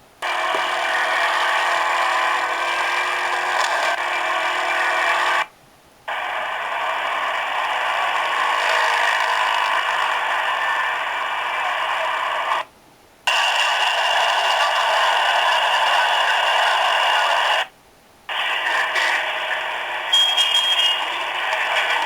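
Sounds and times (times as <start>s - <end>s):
noisy phone call ambience: 6.1s - 22.0s.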